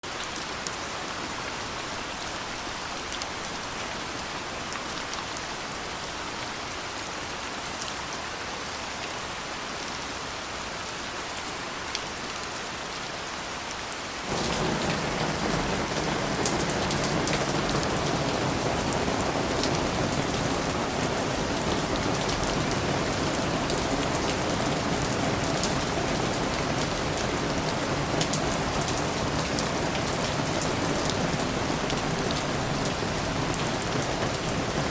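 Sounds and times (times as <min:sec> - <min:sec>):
steady rain falling: 0:00.0 - 0:34.9
raindrops ticking: 0:14.3 - 0:34.9.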